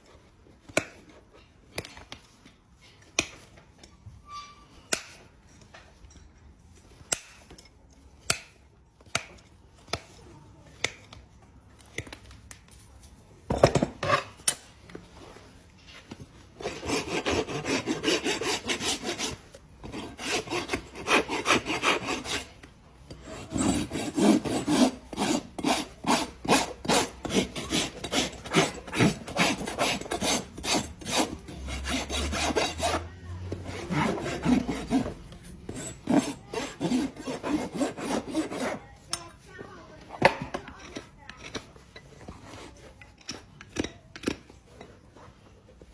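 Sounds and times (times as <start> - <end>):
rasp filing a hoof: 16.6 - 39.2, 40.2 - 45.8.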